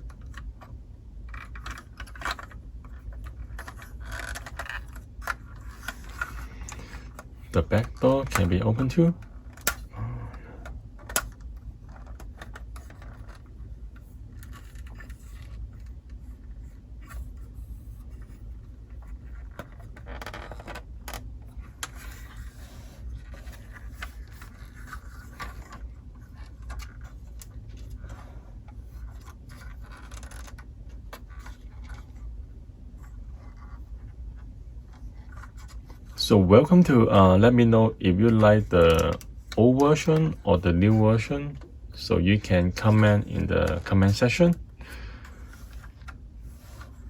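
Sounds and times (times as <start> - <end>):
plastic pieces clicking and scraping: 0.0 - 9.9, 14.3 - 16.0, 28.9 - 32.3
steady low hum: 0.0 - 47.0.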